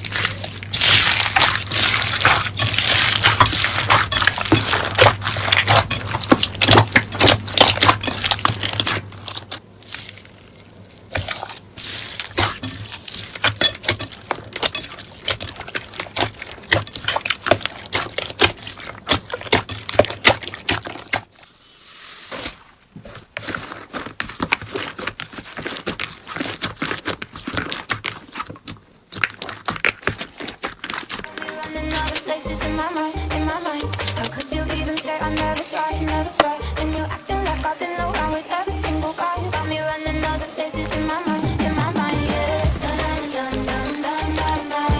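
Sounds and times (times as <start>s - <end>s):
slime squeezed by hand crackling: 0.0s - 21.3s.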